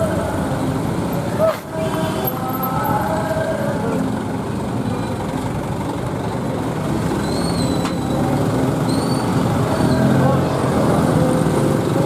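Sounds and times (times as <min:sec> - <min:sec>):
diesel bus engine running: 0:00.0 - 0:12.0
road noise: 0:00.0 - 0:12.0
high-pitched squeal with click: 0:07.2 - 0:10.1.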